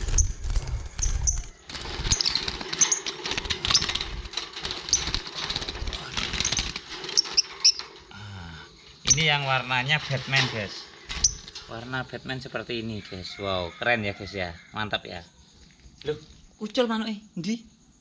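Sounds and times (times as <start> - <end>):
lovebirds chirping: 0.0 - 5.2, 8.7 - 13.1.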